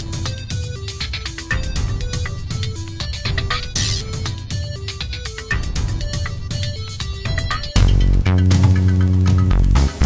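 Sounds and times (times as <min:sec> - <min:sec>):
background music with plucked notes: 0:00.0 - 0:10.0
heavy bass line: 0:05.7 - 0:10.0.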